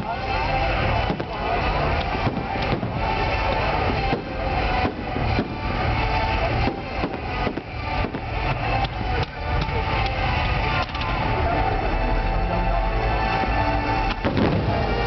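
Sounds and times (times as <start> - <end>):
fireworks bangs and crackles: 0.0 - 11.4, 13.5 - 15.0
continuous din: 0.0 - 15.0.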